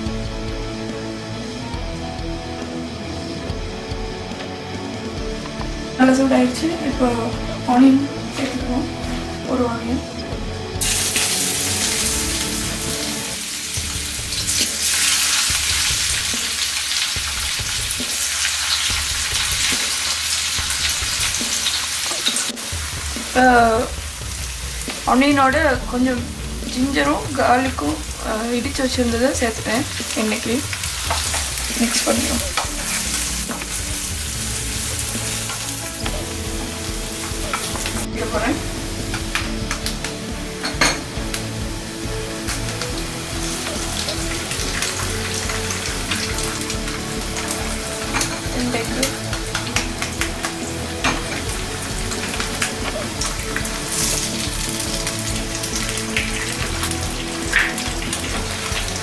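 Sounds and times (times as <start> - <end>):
onion sizzling in a frying pan: 0.0 - 59.0
spoon scraping and knocking on pan: 31.0 - 38.2, 39.0 - 41.7, 42.4 - 59.0.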